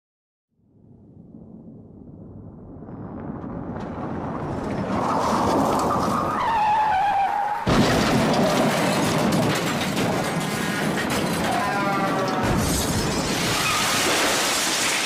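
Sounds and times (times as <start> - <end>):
tyres squealing in a skid: 4.7 - 15.0
metal crunching: 7.5 - 15.0
loud crash impact: 7.6 - 11.6, 12.4 - 15.0.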